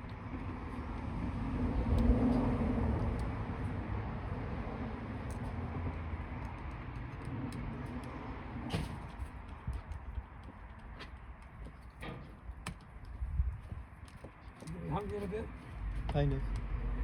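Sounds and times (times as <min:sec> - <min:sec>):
vehicle passing rumble: 0:00.0 - 0:11.5, 0:14.7 - 0:17.0
clicks and taps of tools on wires: 0:03.0 - 0:03.3.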